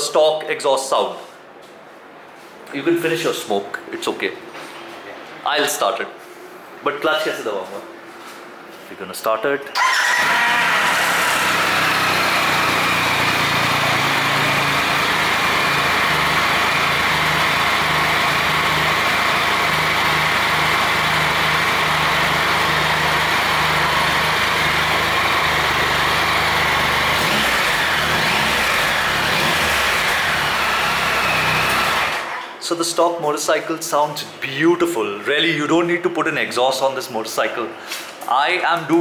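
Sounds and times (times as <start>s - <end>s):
motorcycle engine idling: 9.8s - 32.4s.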